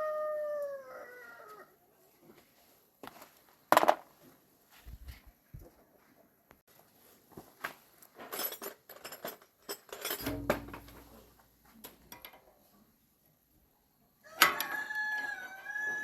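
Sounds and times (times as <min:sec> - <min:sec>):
metal tools clinking and clattering: 0:08.2 - 0:11.3.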